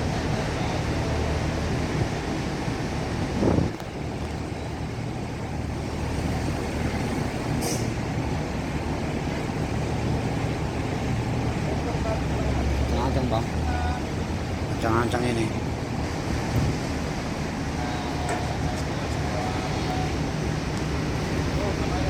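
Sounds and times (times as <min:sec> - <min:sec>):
ship engine rumbling: 0:00.0 - 0:22.0
short high hiss: 0:07.5 - 0:08.0.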